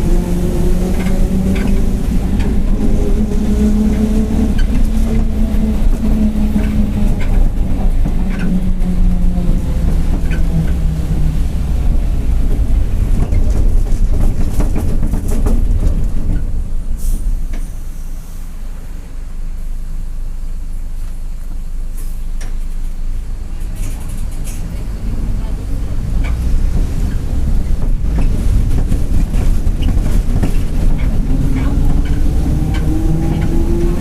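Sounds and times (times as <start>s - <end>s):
bus differential whine: 0.0s - 34.0s
bus engine running: 0.0s - 34.0s
rattles and clicks: 0.7s - 16.8s, 23.6s - 34.0s.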